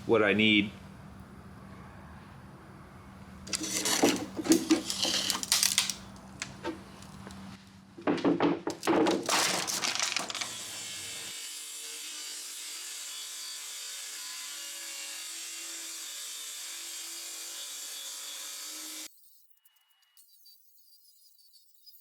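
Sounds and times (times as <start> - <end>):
rasping strokes on wood: 3.5 - 5.5.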